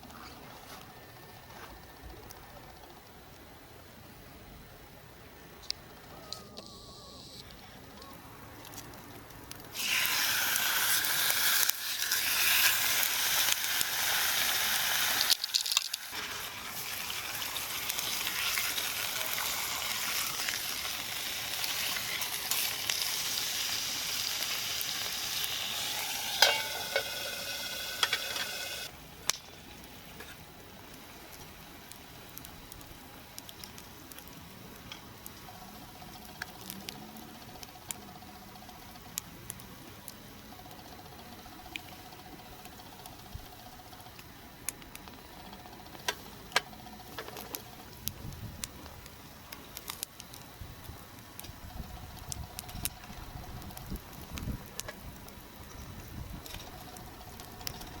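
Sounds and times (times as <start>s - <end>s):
food sizzling in a frying pan: 9.8s - 28.9s.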